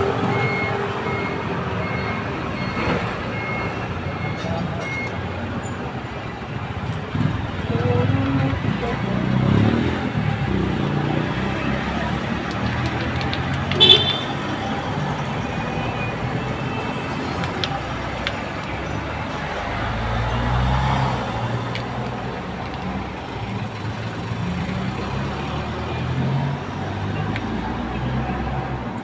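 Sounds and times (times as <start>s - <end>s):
road traffic rumble: 0.0s - 29.0s
vehicle passing: 7.1s - 13.6s.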